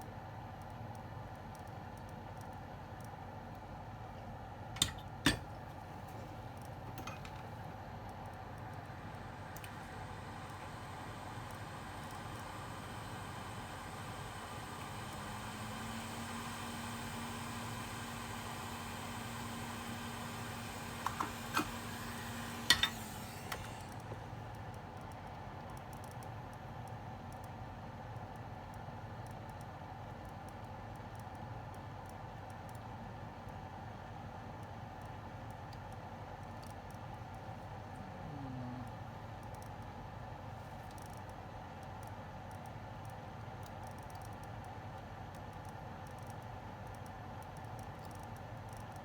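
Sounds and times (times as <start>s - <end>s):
faint hum: 4.1s - 25.7s, 37.1s - 39.8s
faint ticks: 38.8s - 39.9s, 40.8s - 49.0s.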